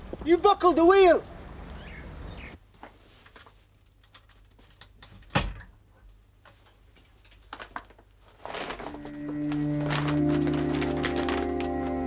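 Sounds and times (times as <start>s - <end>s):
music with held organ notes: 9.0s - 12.0s.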